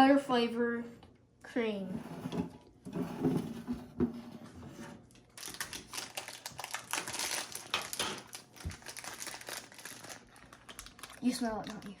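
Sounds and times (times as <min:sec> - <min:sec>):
plastic wrapper crinkling: 0:05.2 - 0:12.0.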